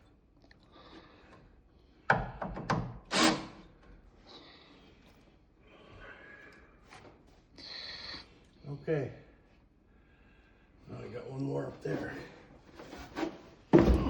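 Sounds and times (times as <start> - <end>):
knocks and thuds: 13.7 - 14.0.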